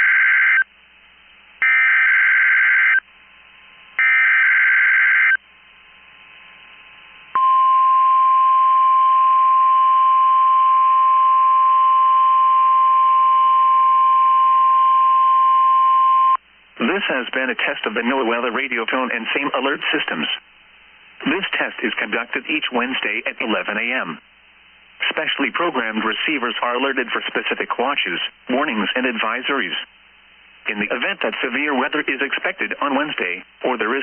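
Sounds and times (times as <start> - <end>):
steady warning alarm tone: 4.0 - 5.4.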